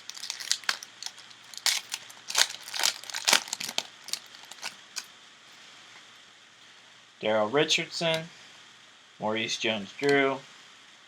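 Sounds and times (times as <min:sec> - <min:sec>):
foil wrapper crinkling and tearing: 0:00.0 - 0:05.1.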